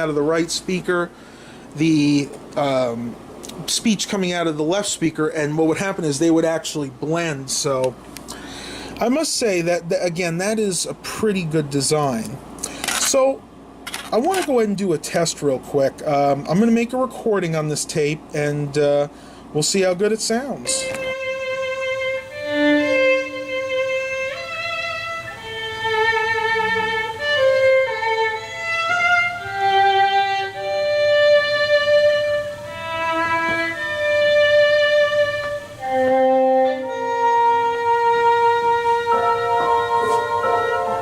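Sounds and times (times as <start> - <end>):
slow bowed string melody: 20.6 - 41.0.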